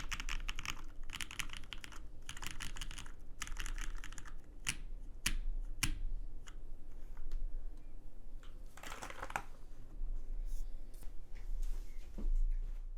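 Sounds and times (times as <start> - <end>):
mechanical keyboard keystrokes: 0.0 - 6.0.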